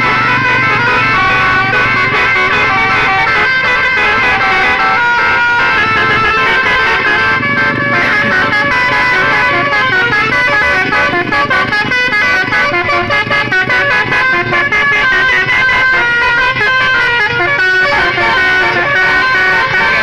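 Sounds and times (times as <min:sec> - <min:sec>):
multi-tone bus horns: 0:00.0 - 0:20.0.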